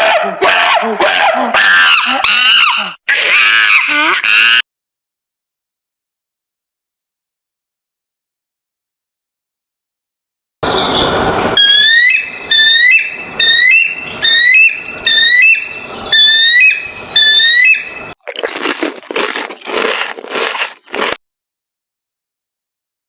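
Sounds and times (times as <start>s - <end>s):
animal squealing calls: 0.6s - 4.6s, 10.6s - 18.2s.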